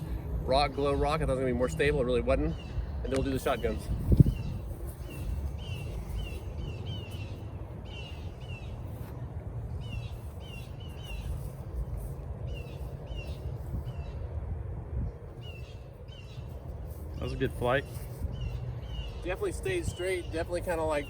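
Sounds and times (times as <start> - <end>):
wind buffeting microphone: 0.0 - 21.0
bird chirping: 2.4 - 9.1, 9.7 - 11.7, 12.5 - 14.3, 15.4 - 21.0.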